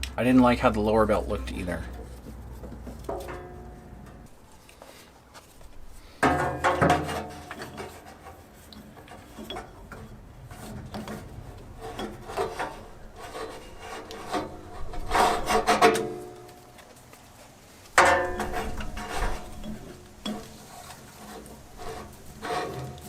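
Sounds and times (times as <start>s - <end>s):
rubber belt rubbing and squeaking: 18.5s - 23.0s.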